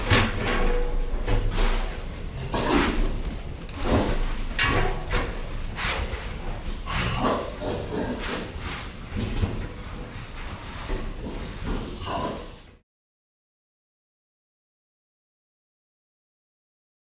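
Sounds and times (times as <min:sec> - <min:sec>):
pigs grunting bursts: 0:01.4 - 0:10.1, 0:11.0 - 0:12.8.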